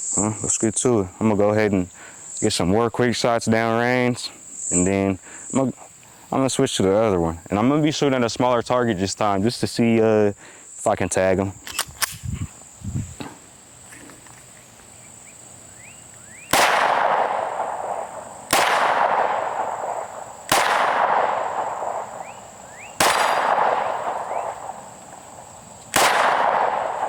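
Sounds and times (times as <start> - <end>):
pistol shots: 16.4 - 27.0.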